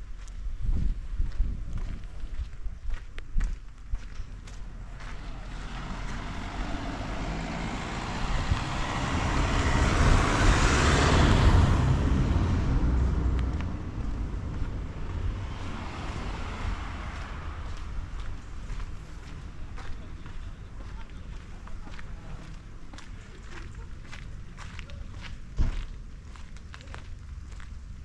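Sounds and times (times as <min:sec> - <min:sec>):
vehicle passing by: 0:04.4 - 0:21.1.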